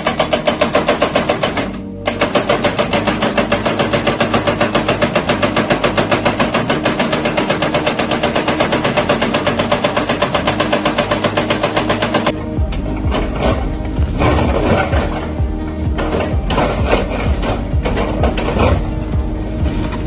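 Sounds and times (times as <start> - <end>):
machine hammering rapidly: 0.0 - 12.4
steady engine: 0.0 - 20.0.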